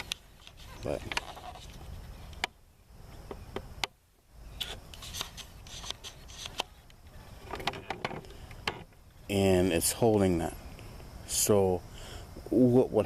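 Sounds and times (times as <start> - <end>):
hand handling clicks and rubbing: 4.6 - 8.8.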